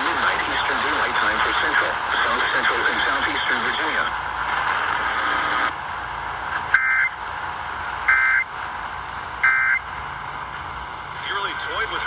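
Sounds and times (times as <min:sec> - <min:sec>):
radio hiss: 0:00.0 - 0:05.7, 0:11.2 - 0:12.0.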